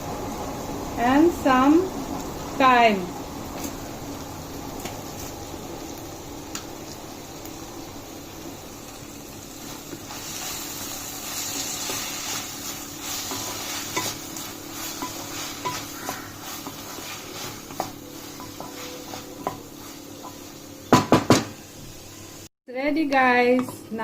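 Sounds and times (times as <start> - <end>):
vegetables sizzling in oil: 0.0 - 22.5
utensil scraping a pan: 10.1 - 20.6.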